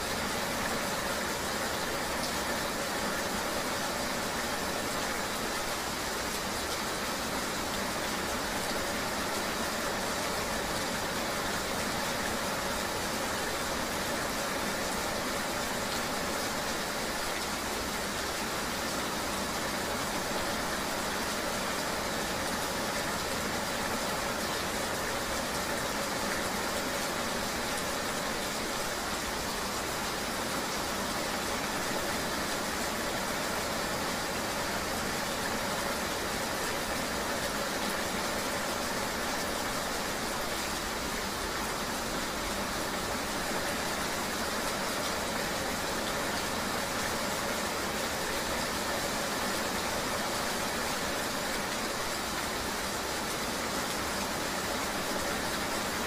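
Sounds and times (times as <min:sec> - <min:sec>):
rain hiss: 0:00.0 - 0:56.0.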